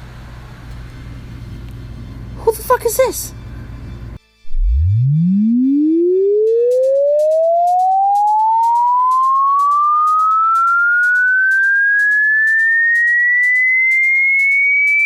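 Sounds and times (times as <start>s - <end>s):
faint background music: 1.9s - 4.5s
rising sine tone: 4.4s - 15.0s
quick ticking beat: 6.8s - 15.0s.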